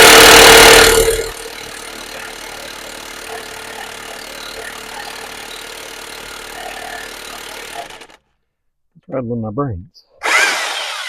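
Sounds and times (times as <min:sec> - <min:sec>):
machine hum: 0:00.0 - 0:08.2
power tool on lug nuts: 0:00.0 - 0:08.2, 0:10.2 - 0:11.0.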